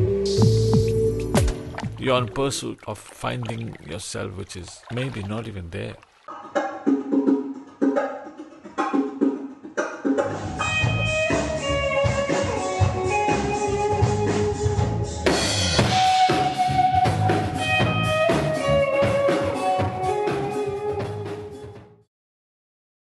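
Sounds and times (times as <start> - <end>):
drum kit beating: 6.4 - 21.8
guitar melodic notes: 10.4 - 14.9, 16.1 - 21.3.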